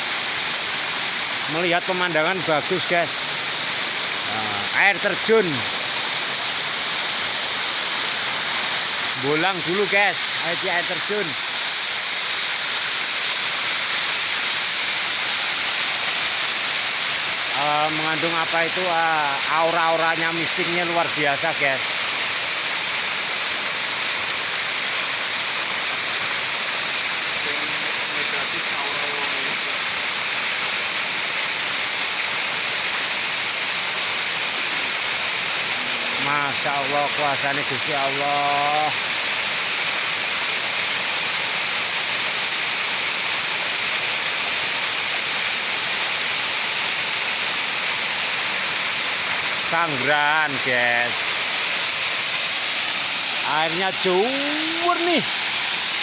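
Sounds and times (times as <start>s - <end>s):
waterfall rushing: 0.0s - 56.0s.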